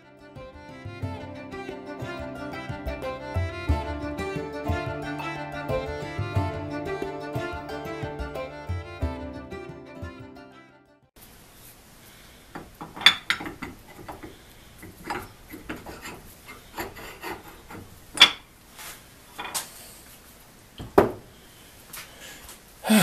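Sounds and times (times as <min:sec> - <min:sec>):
file rasping: 0:15.5 - 0:17.9.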